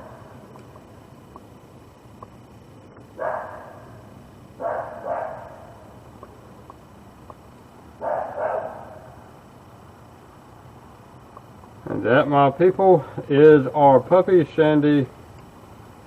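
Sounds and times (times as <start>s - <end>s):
puppy barking: 3.2s - 3.9s, 4.6s - 5.8s, 8.0s - 9.1s.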